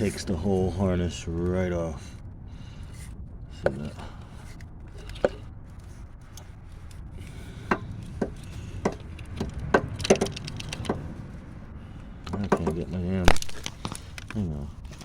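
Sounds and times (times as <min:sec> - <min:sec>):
low rumble: 0:00.0 - 0:15.0
tools clicking and knocking: 0:03.6 - 0:05.5, 0:07.6 - 0:11.1.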